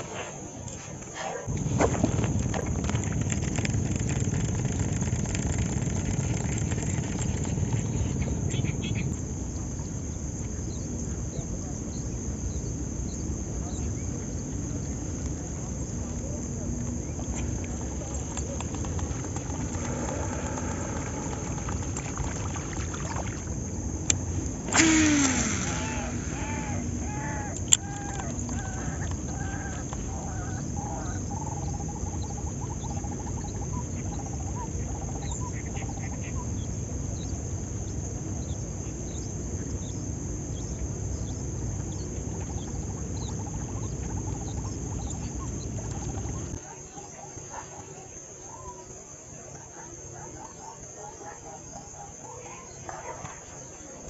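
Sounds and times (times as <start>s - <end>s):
outdoor background noise: 0.0s - 54.0s
fishing reel whizz: 19.1s - 28.9s
reel click: 24.0s - 29.2s.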